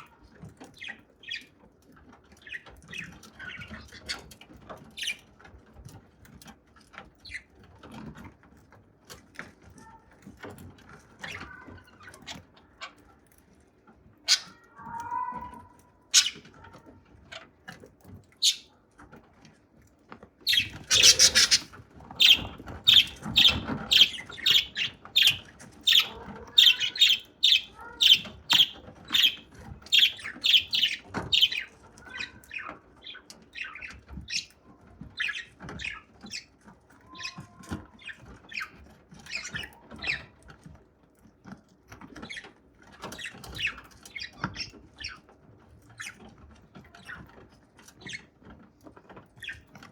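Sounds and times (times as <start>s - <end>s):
budgerigar cracking seeds: 20.5s - 29.4s.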